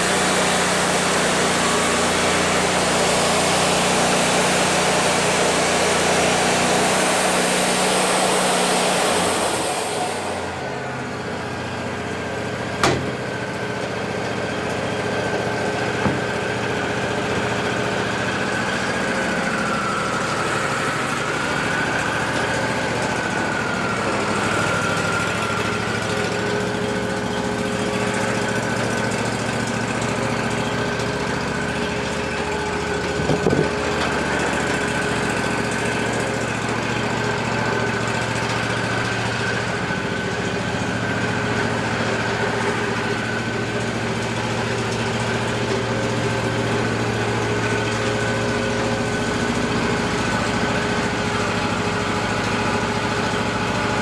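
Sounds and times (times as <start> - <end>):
sawmill engine drone with whine: 0.0 - 54.0
brief clunk: 12.8 - 13.4, 33.2 - 34.2.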